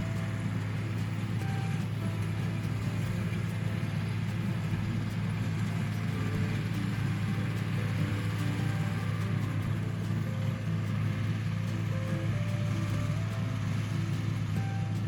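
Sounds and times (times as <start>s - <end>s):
faint music: 0.0s - 15.0s
tractor engine droning: 0.0s - 15.0s.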